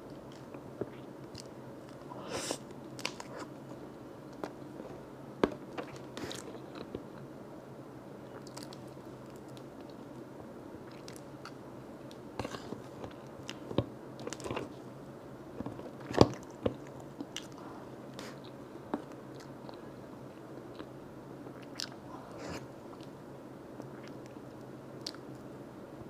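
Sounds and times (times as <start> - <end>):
faint steady hum: 0.0 - 26.0.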